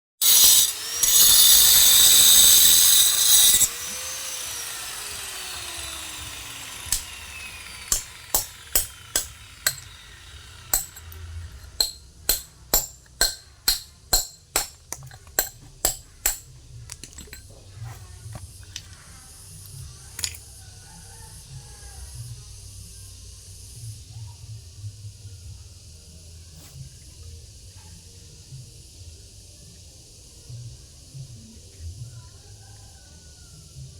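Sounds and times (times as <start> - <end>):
power tool whining: 0.2 - 20.4
hammer and chisel on stone: 6.9 - 17.6.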